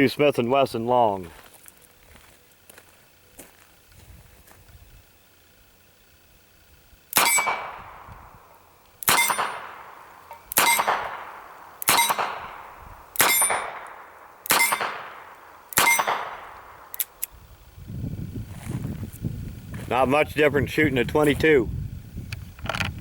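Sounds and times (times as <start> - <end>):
revolver shots: 7.1 - 17.1
long metallic ring: 7.2 - 17.2.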